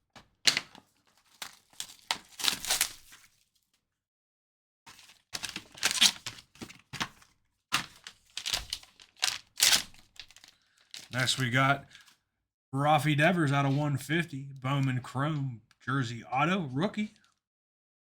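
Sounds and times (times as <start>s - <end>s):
card packaging crinkling and tearing: 0.5s - 3.5s, 4.9s - 12.2s.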